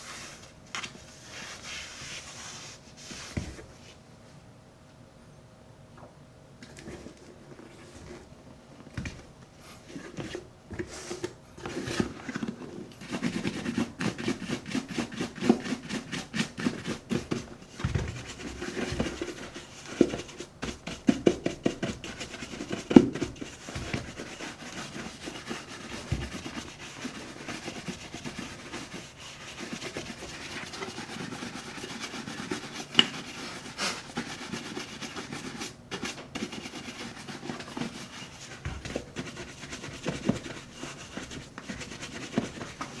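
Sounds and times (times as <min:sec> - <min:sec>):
shoe brush rubbing leather boot: 0:18.2 - 0:43.0.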